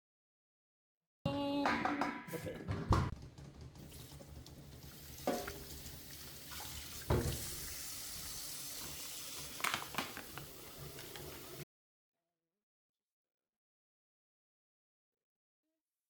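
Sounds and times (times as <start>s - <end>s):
objects knocking in sink: 1.6s - 7.6s
tap water running into sink: 3.3s - 11.6s.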